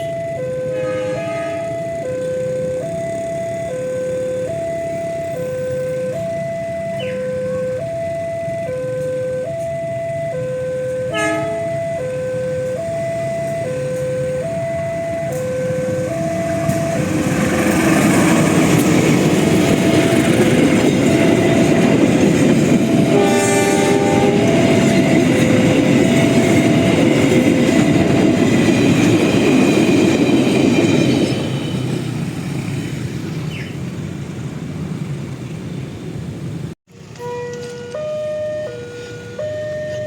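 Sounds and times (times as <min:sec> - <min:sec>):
train horn blast: 0:00.0 - 0:01.8, 0:11.1 - 0:11.8, 0:22.8 - 0:26.9
level-crossing alarm tune: 0:00.0 - 0:31.9, 0:37.2 - 0:40.0
train wheels rumbling on rails: 0:12.0 - 0:38.0.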